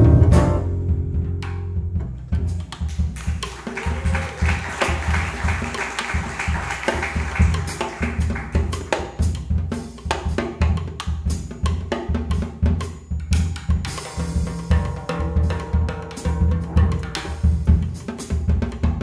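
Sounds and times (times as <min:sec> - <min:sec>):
walking bass: 0:00.0 - 0:02.9
drum kit hits: 0:00.0 - 0:09.8
jazz quartet playing samba: 0:00.0 - 0:19.0.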